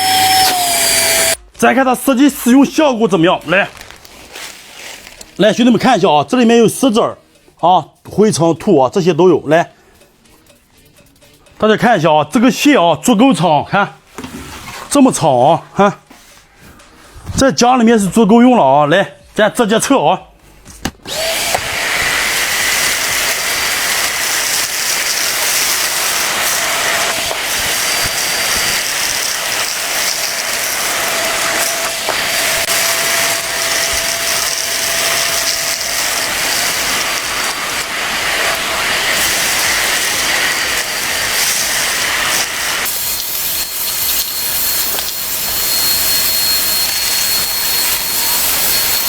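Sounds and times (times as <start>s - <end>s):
vacuum cleaner sucking up stones: 0.0s - 1.4s, 21.1s - 49.0s
grit clicking up hose: 20.8s - 49.0s.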